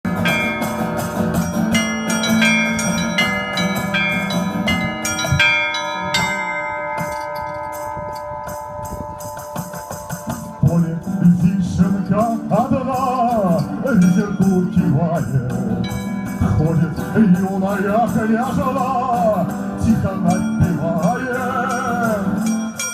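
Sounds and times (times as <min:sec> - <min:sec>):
church bells ringing: 0:00.1 - 0:11.3, 0:11.9 - 0:22.9
person singing: 0:10.4 - 0:15.8, 0:16.4 - 0:22.7.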